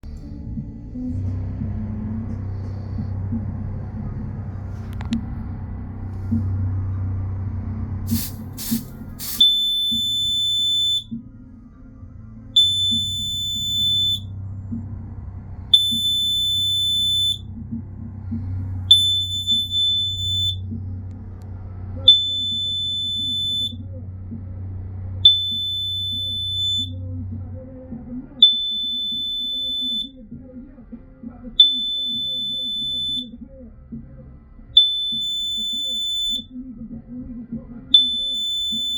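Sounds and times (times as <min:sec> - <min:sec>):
low hum: 0:00.0 - 0:38.9
smoke detector beeping: 0:08.1 - 0:11.2, 0:12.6 - 0:14.3, 0:15.8 - 0:17.4, 0:18.9 - 0:20.6, 0:22.1 - 0:23.8, 0:25.2 - 0:27.0, 0:28.4 - 0:30.1, 0:31.6 - 0:33.3, 0:34.8 - 0:36.5, 0:38.0 - 0:38.9.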